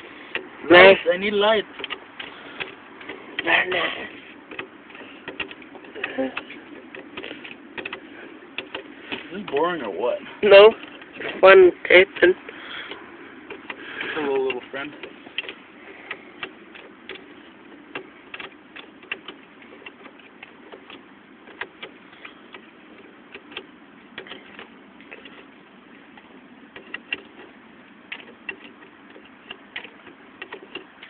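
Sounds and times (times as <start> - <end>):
light clicks and taps: 26.1 - 31.0.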